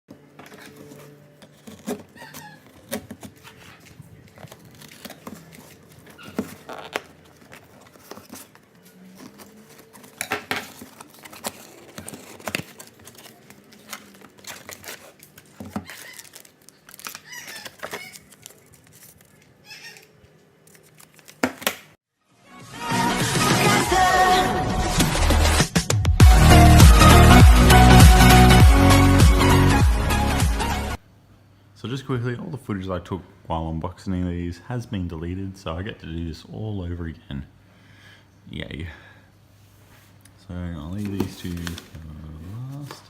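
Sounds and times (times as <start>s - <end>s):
packaging torn and crinkled: 9.2s - 19.5s.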